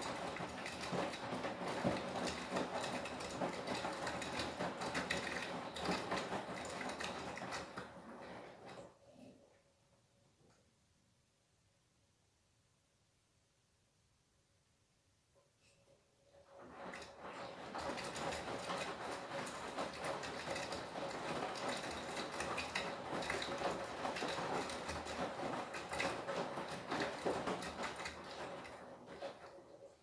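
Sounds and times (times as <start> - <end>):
washing machine drum tumbling load: 0.0 - 8.8, 16.5 - 29.5.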